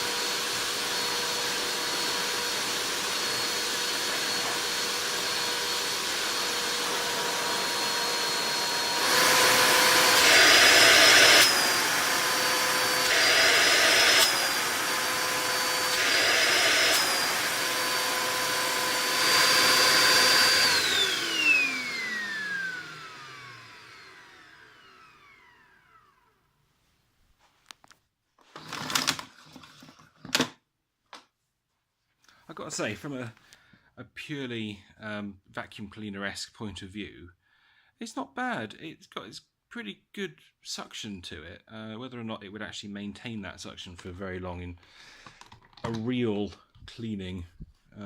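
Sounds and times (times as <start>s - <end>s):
vacuum airflow rushing: 0.0s - 24.3s
vacuum cleaner motor whine: 0.0s - 26.4s, 28.5s - 29.5s.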